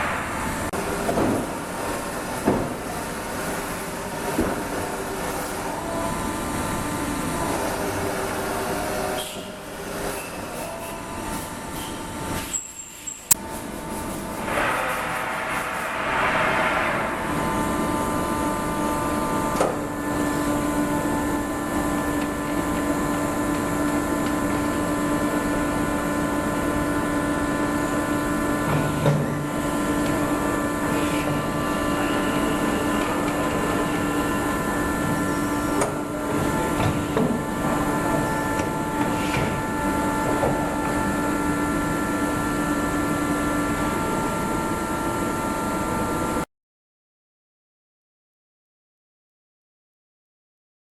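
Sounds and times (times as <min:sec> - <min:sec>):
milling machine whine: 0:17.6 - 0:46.3.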